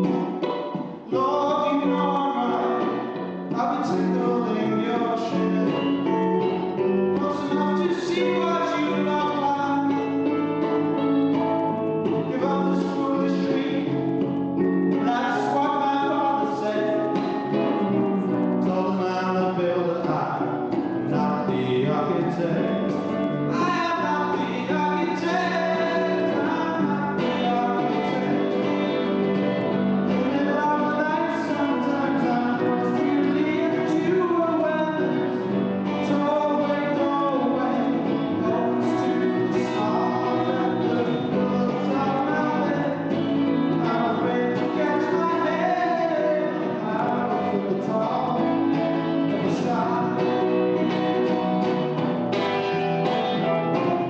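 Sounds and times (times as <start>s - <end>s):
acoustic guitar: 0.0s - 54.0s
voices singing: 0.0s - 54.0s.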